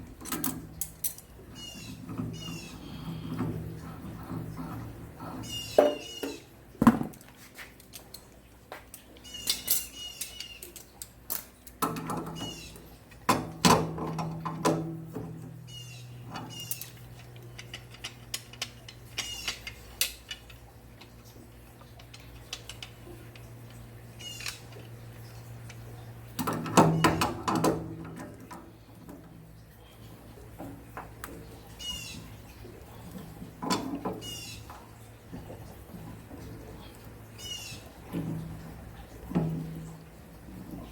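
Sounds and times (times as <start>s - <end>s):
metal tools clinking and knocking: 0.1s - 4.7s, 9.0s - 12.6s, 16.1s - 28.5s.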